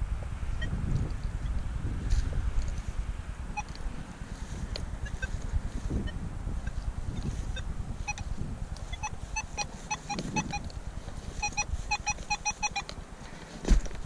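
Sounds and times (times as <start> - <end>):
wind rumble on microphone: 0.0 - 14.0
metal detector beeps: 3.6 - 3.8, 5.0 - 5.4, 6.0 - 10.7, 11.3 - 12.9.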